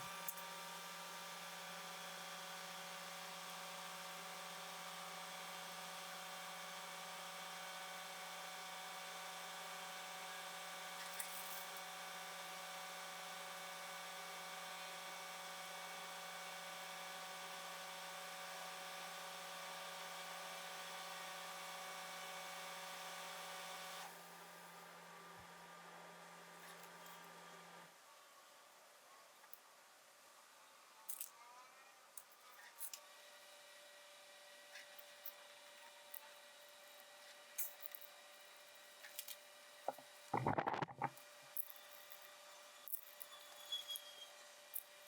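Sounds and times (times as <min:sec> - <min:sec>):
steady machine hum: 0:39.9 - 0:41.2.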